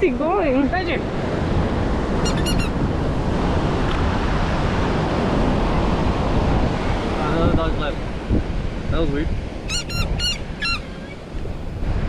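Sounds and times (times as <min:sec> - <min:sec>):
ocean surf washing on beach: 0:00.0 - 0:12.0
wind buffeting microphone: 0:00.0 - 0:12.0
faint high-pitched call: 0:02.2 - 0:02.8, 0:09.7 - 0:11.2.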